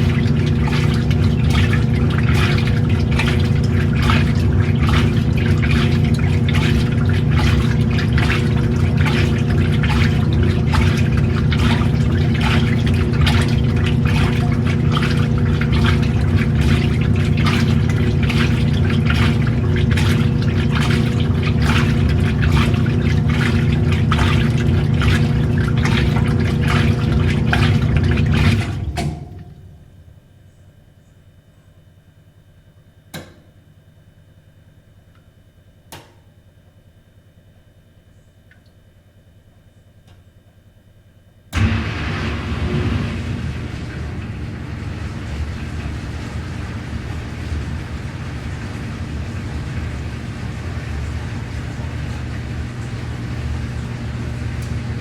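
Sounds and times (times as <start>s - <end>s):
water sloshing and splashing: 0.0s - 30.2s, 41.6s - 55.0s
washing machine motor hum: 0.0s - 31.0s, 41.4s - 55.0s.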